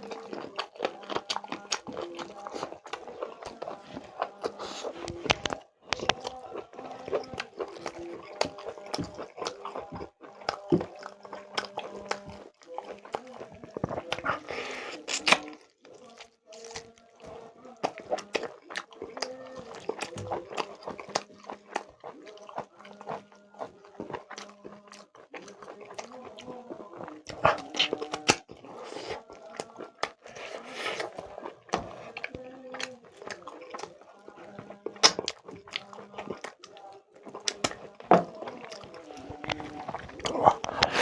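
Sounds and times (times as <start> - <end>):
chewing and biting food: 0.0 - 41.0
faint background music: 0.0 - 41.0.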